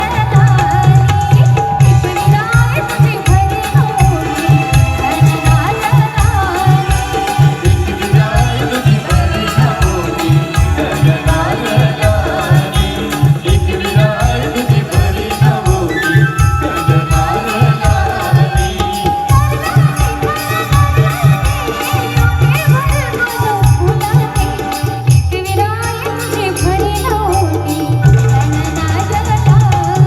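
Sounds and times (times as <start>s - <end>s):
drum beat: 0.0s - 27.0s.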